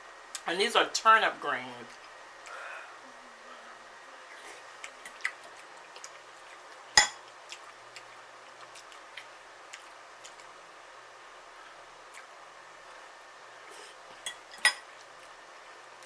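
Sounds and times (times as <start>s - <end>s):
chewing: 4.3s - 10.6s, 12.0s - 12.4s.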